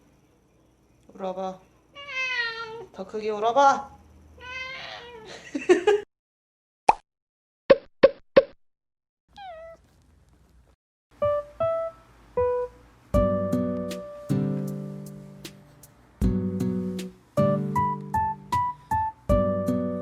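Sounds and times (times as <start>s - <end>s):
cat meow: 1.9s - 2.9s, 4.4s - 5.4s, 9.3s - 9.9s
guitar music: 11.2s - 20.0s.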